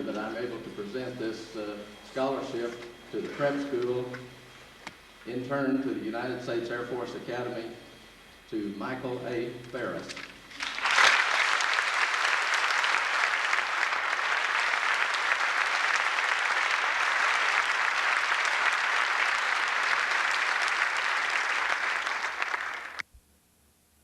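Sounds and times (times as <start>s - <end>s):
audience applauding: 10.5s - 23.0s.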